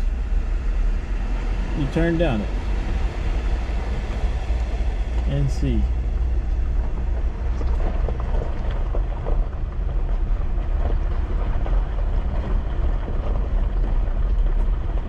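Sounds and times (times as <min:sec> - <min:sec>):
vehicle engine and tyres rumbling: 0:00.0 - 0:15.0
small knocks and rattles: 0:06.4 - 0:15.0.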